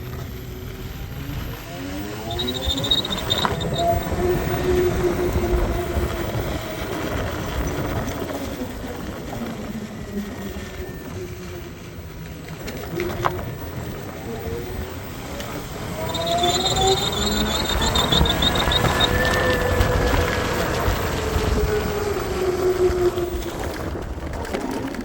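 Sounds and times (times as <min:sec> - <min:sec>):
electric scooter drivetrain whine: 0:00.0 - 0:25.0
high screech: 0:00.9 - 0:08.4, 0:12.9 - 0:23.7.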